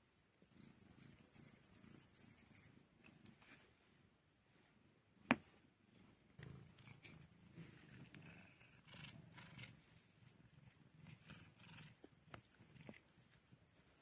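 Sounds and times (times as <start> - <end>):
cat purring rumble while eating: 0.3 - 3.6, 5.8 - 14.0
soft crunching of dry food: 10.6 - 14.0.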